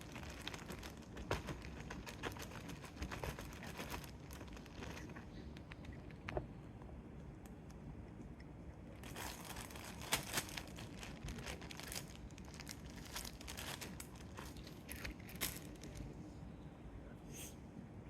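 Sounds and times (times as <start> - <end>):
vegetables crinkling and crunching: 0.0 - 6.5, 8.9 - 16.2.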